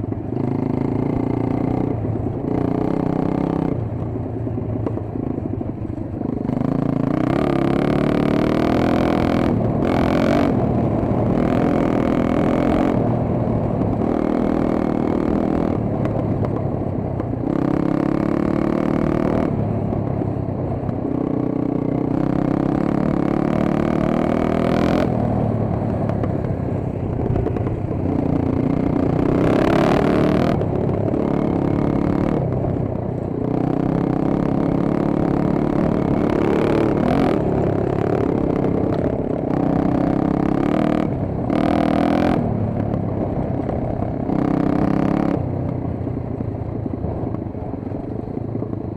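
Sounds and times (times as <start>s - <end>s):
dirt bike engine revving: 6.6s - 10.6s, 17.5s - 19.5s, 28.4s - 32.4s, 33.7s - 38.7s.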